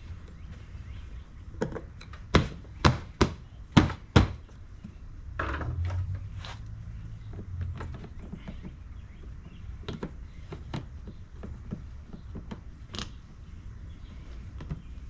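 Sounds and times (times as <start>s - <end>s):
low background rumble: 0.0s - 15.0s
light clicks and knocks: 7.2s - 13.4s.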